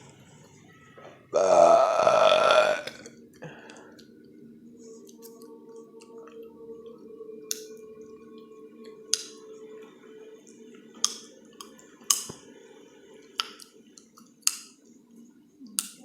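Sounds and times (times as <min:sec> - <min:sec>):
low steady hum: 0:00.0 - 0:16.0
chewing gum snapping: 0:07.5 - 0:07.8, 0:08.8 - 0:09.4, 0:11.0 - 0:12.4, 0:13.4 - 0:14.8.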